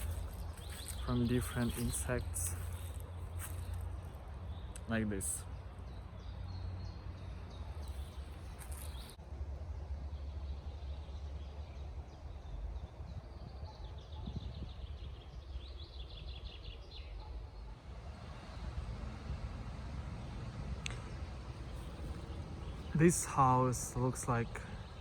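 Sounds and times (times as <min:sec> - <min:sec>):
steady low rumble: 0:00.0 - 0:06.0, 0:17.6 - 0:25.0
songbirds trilling: 0:00.0 - 0:09.2, 0:10.1 - 0:25.0.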